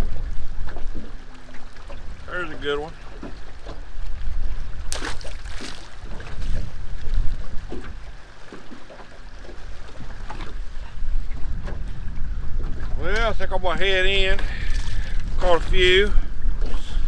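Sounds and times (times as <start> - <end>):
wind buffeting microphone: 0.0 - 17.0
knocks from boat: 4.9 - 6.7.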